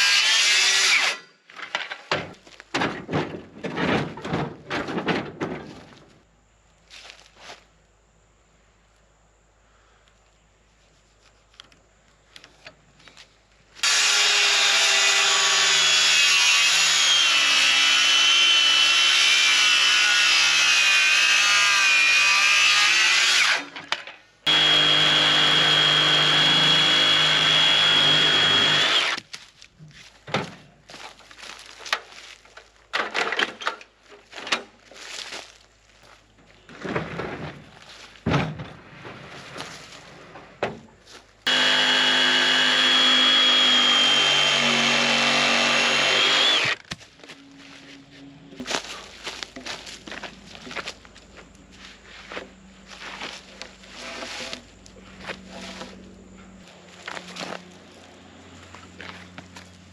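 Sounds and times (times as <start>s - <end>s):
power saw cutting wood: 0.0s - 1.2s, 13.8s - 23.8s, 24.5s - 29.2s, 41.5s - 46.8s
knocks and scraping of wood: 1.5s - 6.3s, 20.2s - 47.9s, 48.5s - 57.9s.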